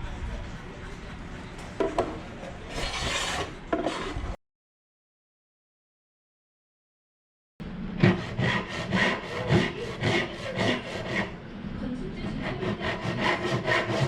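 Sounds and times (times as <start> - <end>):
hand saw cutting wood: 2.7 - 4.4, 8.0 - 11.4, 12.4 - 14.0.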